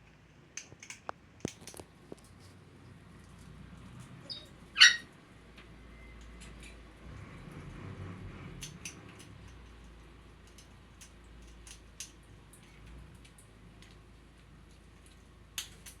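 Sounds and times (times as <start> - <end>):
light clicks and taps: 8.6 - 16.0.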